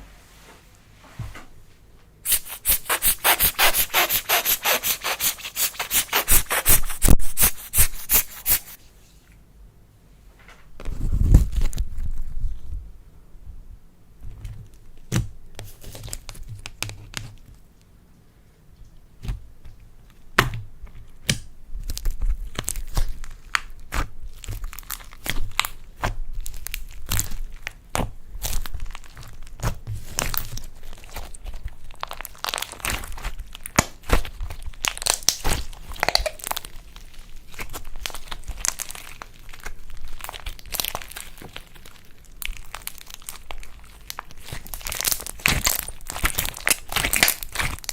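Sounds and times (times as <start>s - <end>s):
slime crackling and popping: 21.2s - 47.9s.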